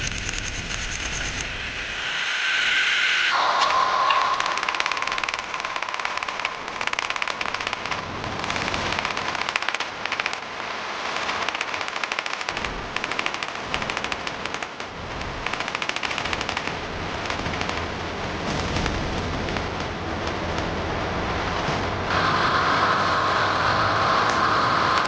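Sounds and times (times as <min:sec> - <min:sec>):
rapid hammering on hot steel: 0:03.3 - 0:10.4.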